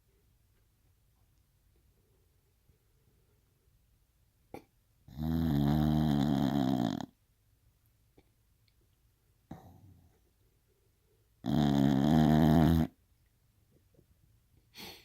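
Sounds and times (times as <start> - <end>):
dog snoring: 5.1 - 7.2, 11.4 - 13.0.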